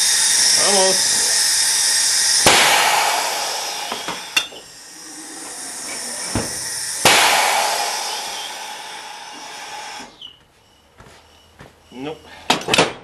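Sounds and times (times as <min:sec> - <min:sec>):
steady hiss: 0:00.0 - 0:10.1.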